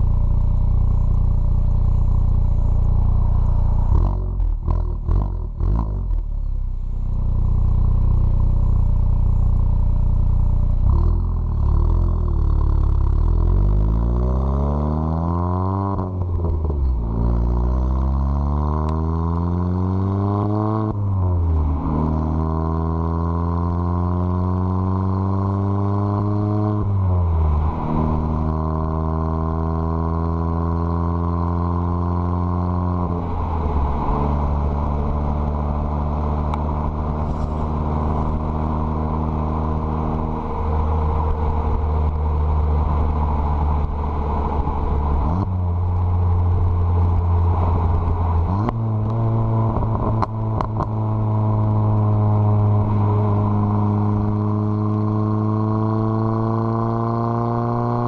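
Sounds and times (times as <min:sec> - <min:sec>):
car engine accelerating: 0:00.0 - 0:58.0
exhaust cracks: 0:33.7 - 0:39.3.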